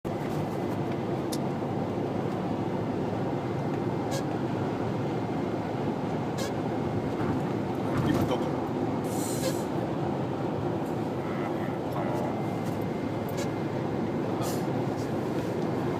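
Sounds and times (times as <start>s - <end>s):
car engine and road noise: 0.0s - 15.9s
short high-pitched squeak: 6.4s - 6.6s.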